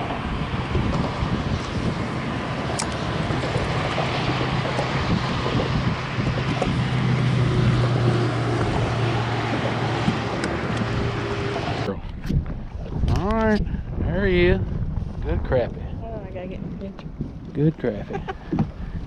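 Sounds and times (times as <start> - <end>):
steady low hum: 0.0 - 19.0
wind buffeting microphone: 0.0 - 19.0.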